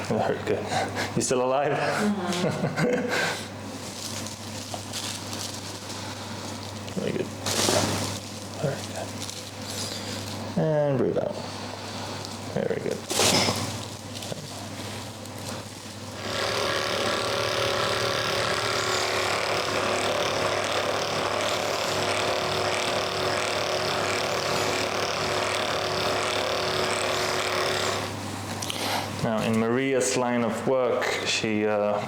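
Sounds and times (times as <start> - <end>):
small electric motor humming: 13.1 - 29.2.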